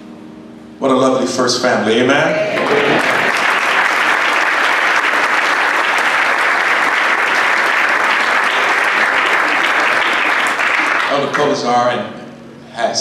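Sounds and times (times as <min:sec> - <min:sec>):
congregation applauding: 0:02.5 - 0:11.8.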